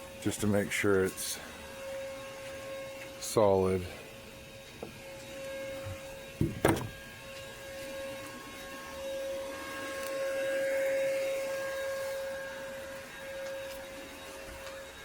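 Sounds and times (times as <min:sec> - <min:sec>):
shop vac whining: 0:00.0 - 0:15.0
sharp knocks: 0:06.4 - 0:07.0.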